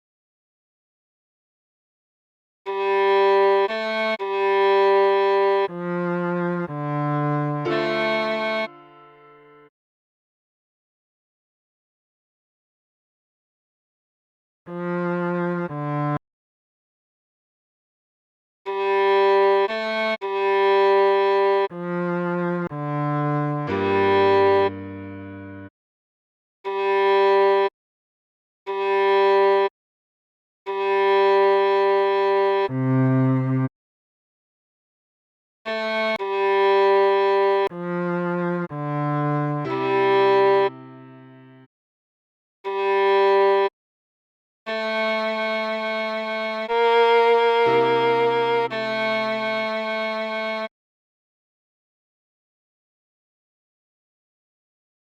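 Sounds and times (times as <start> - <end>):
viola notes: 2.7 - 9.7, 21.1 - 25.7, 35.7 - 41.7, 45.7 - 50.0.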